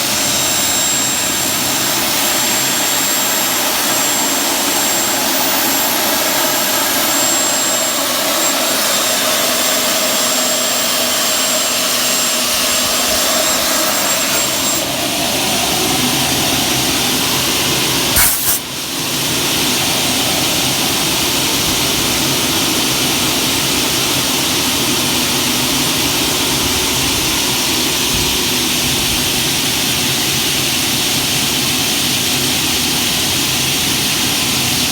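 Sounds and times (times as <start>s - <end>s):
cutting saw running: 0.0s - 34.9s.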